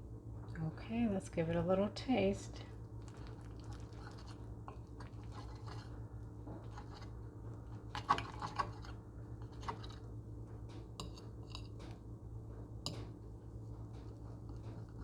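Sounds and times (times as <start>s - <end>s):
steady low hum: 0.0s - 15.0s
person chewing food: 2.9s - 6.0s.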